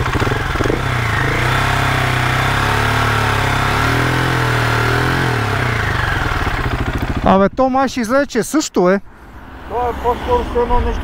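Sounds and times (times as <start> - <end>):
motorcycle engine revving: 0.0 - 7.5
steady engine whine: 0.0 - 7.6, 9.1 - 11.0.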